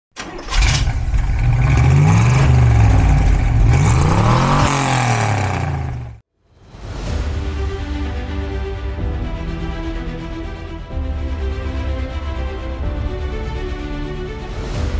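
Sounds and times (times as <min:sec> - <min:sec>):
car engine revving: 0:00.2 - 0:06.2.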